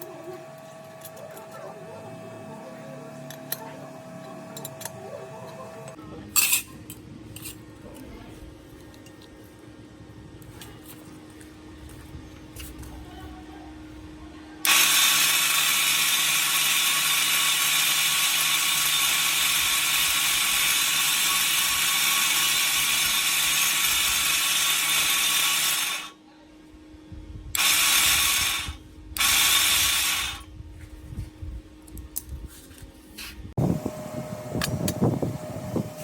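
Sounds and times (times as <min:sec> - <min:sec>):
power tool grinding whir: 0:14.7 - 0:26.2, 0:27.6 - 0:30.4.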